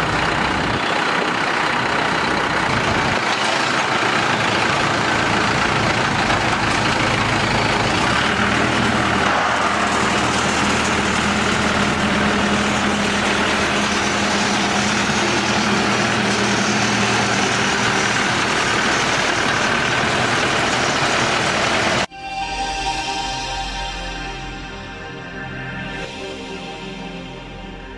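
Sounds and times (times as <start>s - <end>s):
drilling rig engine humming: 0.0s - 22.1s
music: 22.1s - 27.9s.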